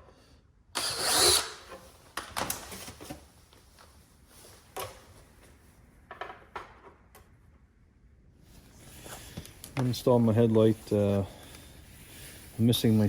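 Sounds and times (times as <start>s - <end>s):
electric drill boring: 0.8s - 1.7s.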